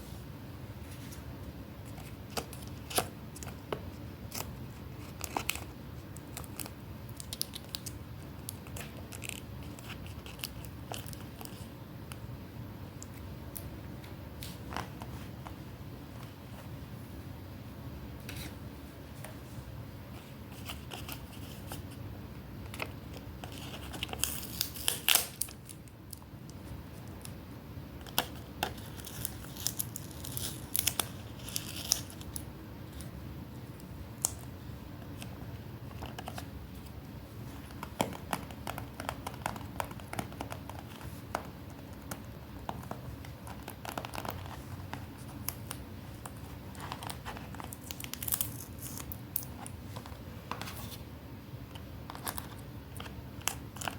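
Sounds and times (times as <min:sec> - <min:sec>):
paper crinkling and tearing: 0:28.2 - 0:32.4, 0:43.2 - 0:49.7.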